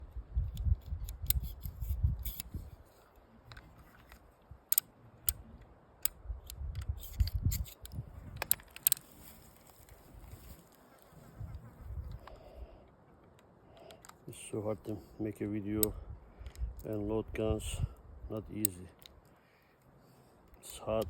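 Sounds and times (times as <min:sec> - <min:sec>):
revolver metallic clicks: 0:04.7 - 0:09.1.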